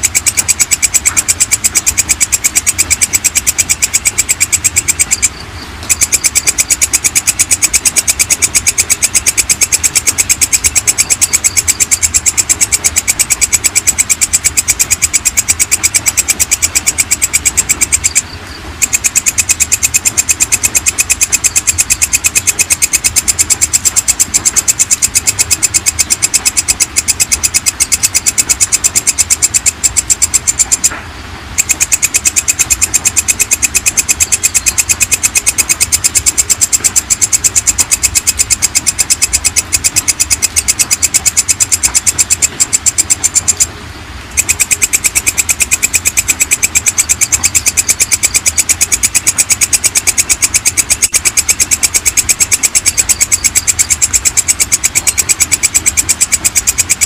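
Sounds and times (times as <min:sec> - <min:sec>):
katydid clicking chirps: 0:00.0 - 0:31.0, 0:31.6 - 0:57.0.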